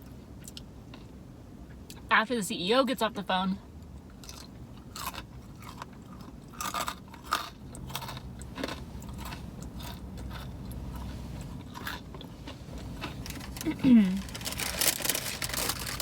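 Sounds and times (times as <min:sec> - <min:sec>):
low steady hum: 0:00.0 - 0:16.0
chewing with crunchy mouth clicks: 0:04.0 - 0:14.5.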